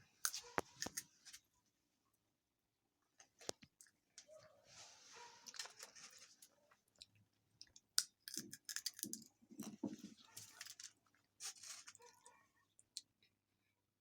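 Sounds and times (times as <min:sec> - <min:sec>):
sunflower seeds crunching: 0:07.6 - 0:09.3.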